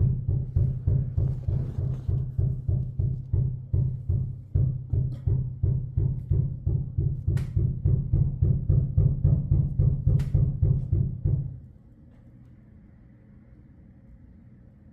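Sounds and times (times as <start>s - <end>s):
water hammer thuds in pipes: 0.0s - 11.6s
faint hum: 10.8s - 14.9s.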